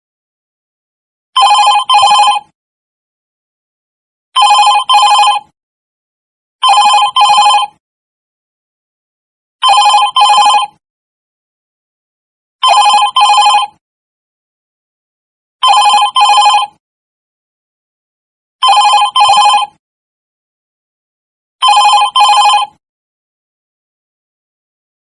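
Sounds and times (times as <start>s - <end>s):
telephone ringing: 1.4s - 2.5s, 4.4s - 5.5s, 6.6s - 7.8s, 9.6s - 10.8s, 12.6s - 13.8s, 15.6s - 16.8s, 18.6s - 19.8s, 21.6s - 22.8s.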